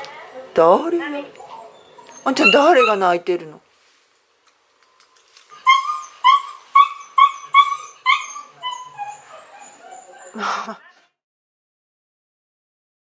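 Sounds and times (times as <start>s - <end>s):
dog whining and crying: 1.3s - 3.2s, 5.5s - 10.4s.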